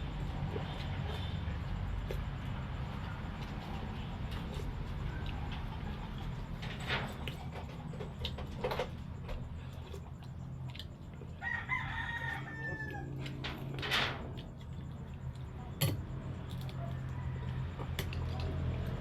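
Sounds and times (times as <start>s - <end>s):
steady low hum: 0.0s - 19.0s
rooster crowing: 11.3s - 14.1s, 16.7s - 18.7s.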